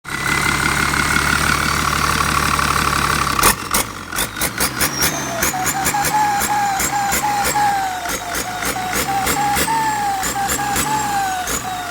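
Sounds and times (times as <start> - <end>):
turbocharger whine: 0.1 - 11.9
quick sharp pulses: 3.4 - 11.9
high whistle rising and falling: 4.8 - 11.6.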